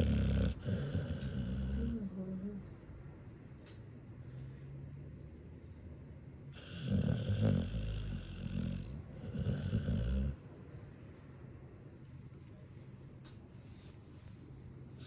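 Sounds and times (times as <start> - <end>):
dog snoring: 0.0 - 2.6, 6.5 - 10.6.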